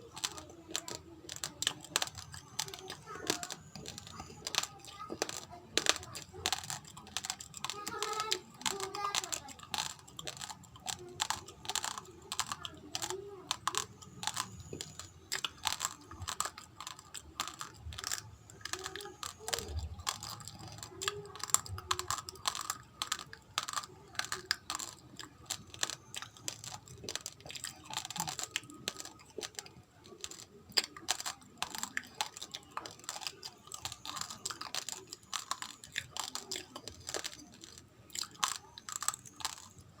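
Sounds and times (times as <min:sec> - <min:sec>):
chewing crunchy rice: 0:00.0 - 0:40.0.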